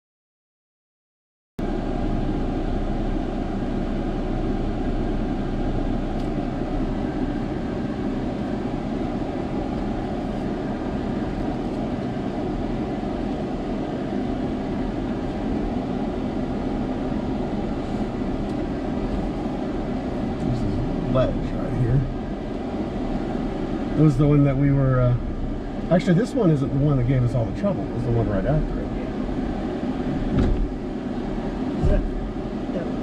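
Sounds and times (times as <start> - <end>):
truck engine rumbling: 1.6 - 33.0.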